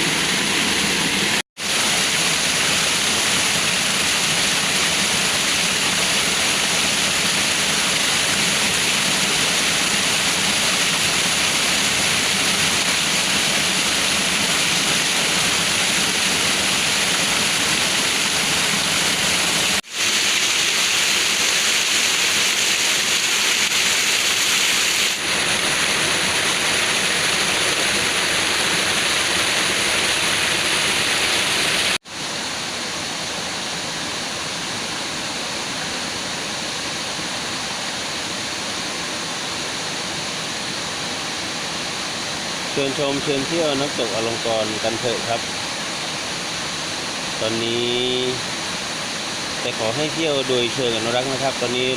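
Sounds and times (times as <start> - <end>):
waterfall rushing: 0.0 - 51.9.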